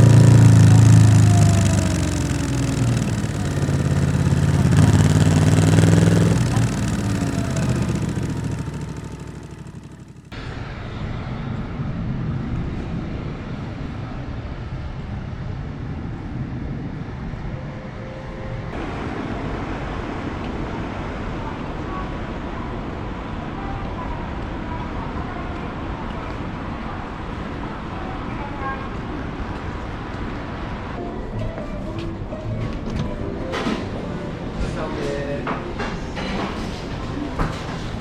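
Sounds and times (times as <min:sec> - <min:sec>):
motorcycle engine: 0:00.0 - 0:10.4
steady vehicle rumble: 0:00.0 - 0:10.4.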